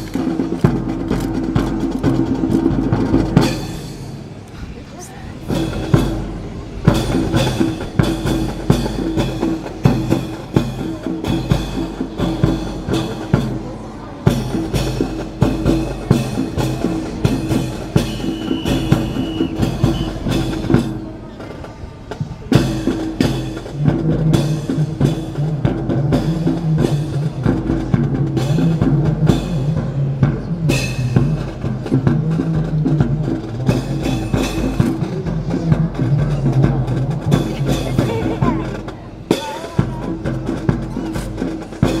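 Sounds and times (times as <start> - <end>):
music with steady drum beat: 0.0 - 42.0.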